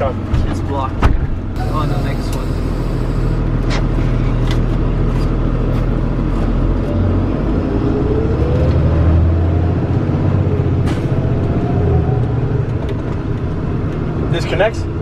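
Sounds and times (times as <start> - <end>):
truck engine rumble: 0.0 - 15.0
faint rising whine: 1.6 - 3.5.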